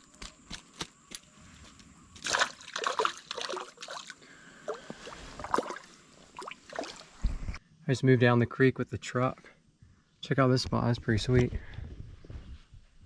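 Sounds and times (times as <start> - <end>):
water splashing and sloshing: 2.2 - 7.6.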